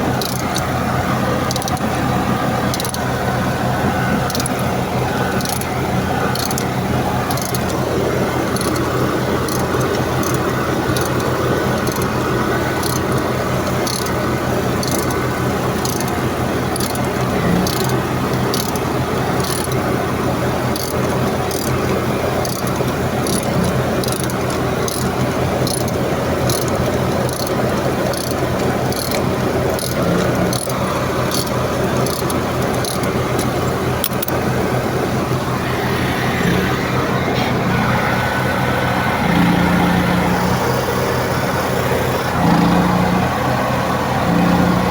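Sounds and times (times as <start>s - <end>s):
light ticking: 0.0s - 35.6s
machinery humming: 0.0s - 44.9s.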